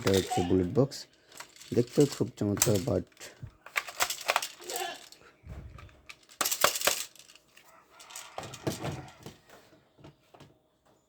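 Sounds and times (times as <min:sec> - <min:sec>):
plastic toy gun clicks and rattles: 0:00.0 - 0:00.6, 0:01.3 - 0:05.2, 0:05.8 - 0:08.9
sharp plastic clatter: 0:00.0 - 0:00.6, 0:01.3 - 0:09.3.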